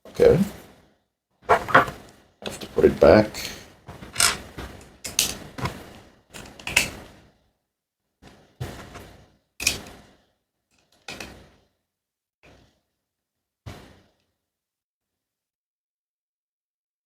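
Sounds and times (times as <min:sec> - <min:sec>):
blender parts clicking and knocking: 0:04.2 - 0:04.4.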